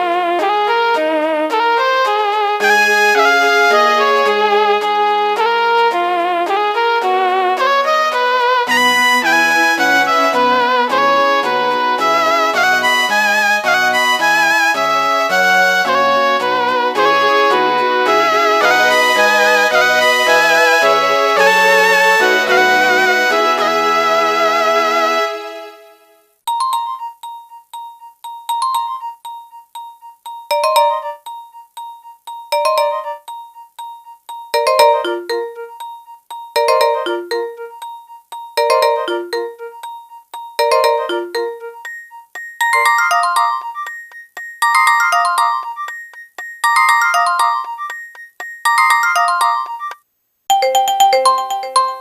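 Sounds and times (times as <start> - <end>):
keyboard-like ringtone melody: 2.6 - 4.8, 8.7 - 24.4, 26.5 - 52.0
polyphonic ringtone chord: 30.4 - 31.4, 32.4 - 52.0.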